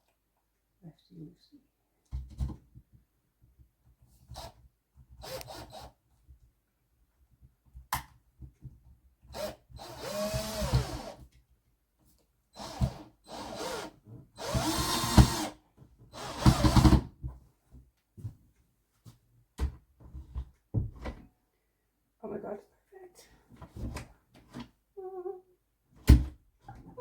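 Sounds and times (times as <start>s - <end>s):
power drill driving screws: 5.2s - 5.9s, 9.3s - 11.2s, 12.6s - 15.6s, 16.2s - 17.1s.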